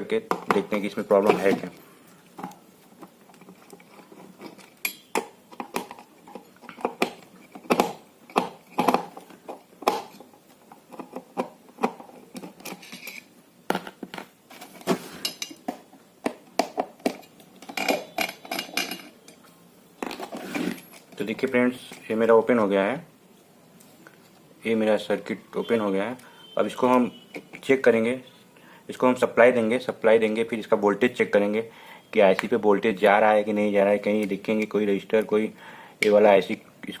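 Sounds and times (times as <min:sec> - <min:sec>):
tools and screws clicking on casing: 0:15.3 - 0:19.4.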